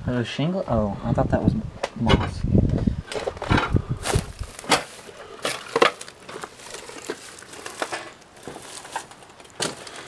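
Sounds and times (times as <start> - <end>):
footsteps crunching on dry debris: 3.2 - 10.0.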